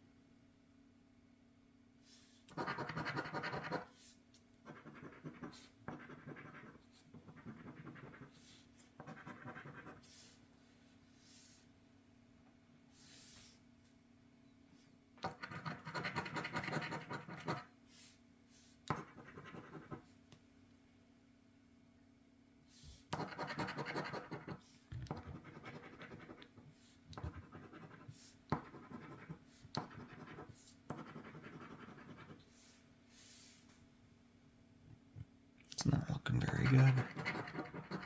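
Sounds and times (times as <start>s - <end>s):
lottery ticket being scratched: 36.3s - 38.0s.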